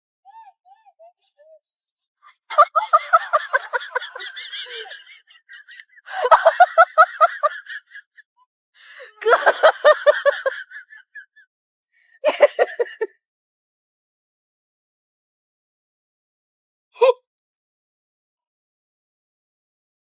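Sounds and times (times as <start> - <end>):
bursts of laughter: 2.3 - 8.1, 9.2 - 11.2.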